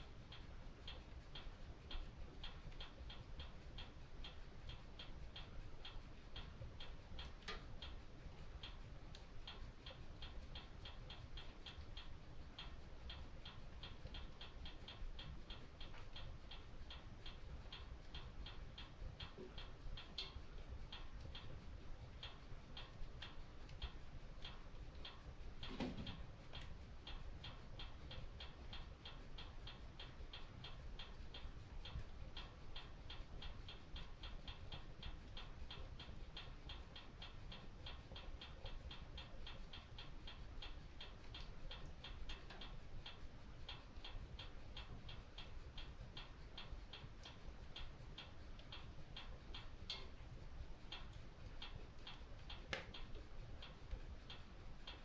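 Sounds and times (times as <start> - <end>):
fireplace fire crackling: 0.0 - 55.0.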